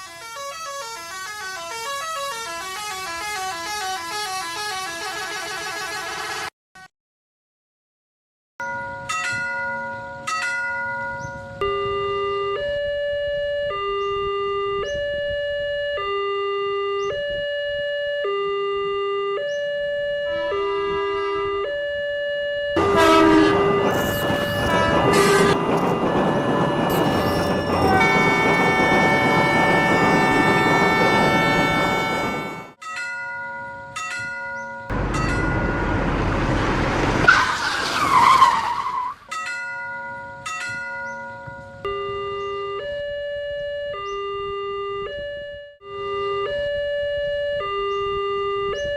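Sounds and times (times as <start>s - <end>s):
two-tone siren: 0.0s - 6.5s, 11.6s - 32.8s, 41.2s - 48.9s
railroad crossing bell chime: 8.6s - 15.8s, 19.5s - 36.1s, 39.3s - 48.9s
rushing rumbling train noise: 22.8s - 32.8s, 34.9s - 39.4s
wavering high squeal: 22.8s - 32.8s.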